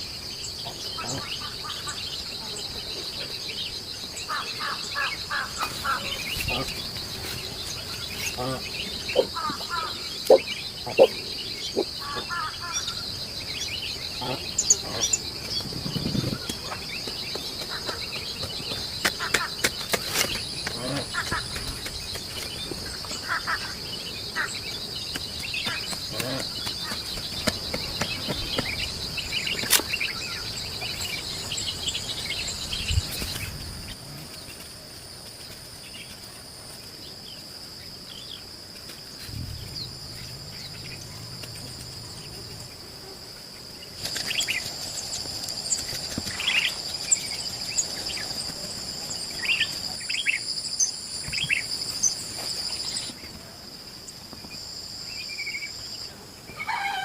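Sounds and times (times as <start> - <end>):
birds chirping: 0.0 - 34.7, 37.0 - 53.4
insects shrilling: 38.9 - 53.2.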